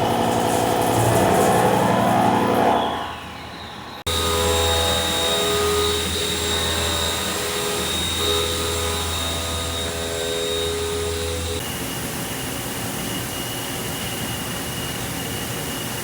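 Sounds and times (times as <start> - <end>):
steady machine tones: 0.0 - 3.3, 4.1 - 11.8
shifting machine sound: 4.1 - 11.6
electric hum with high whine: 4.1 - 16.0.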